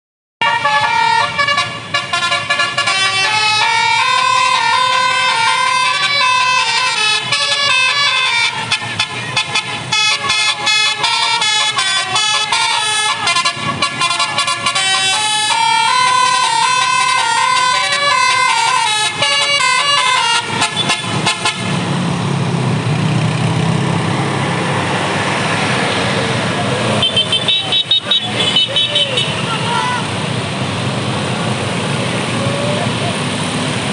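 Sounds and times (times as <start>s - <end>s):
multi-tone bus air horn melody: 0.4s - 21.8s, 27.0s - 30.1s.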